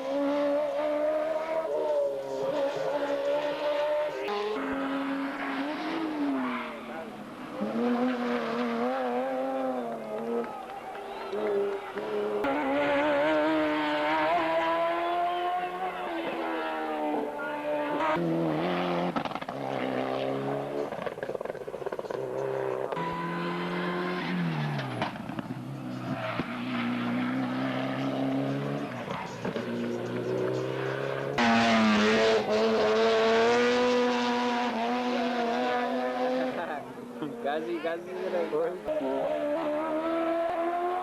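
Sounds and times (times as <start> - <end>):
race car engine revving: 0.0 - 41.0
louder engine: 29.5 - 36.8.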